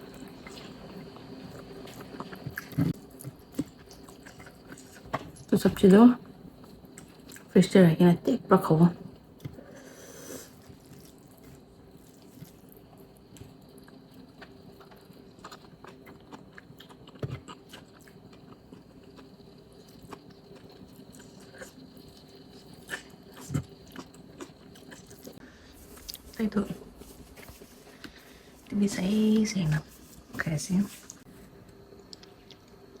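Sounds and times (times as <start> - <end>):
person chewing food: 0.0 - 5.5, 9.3 - 26.4.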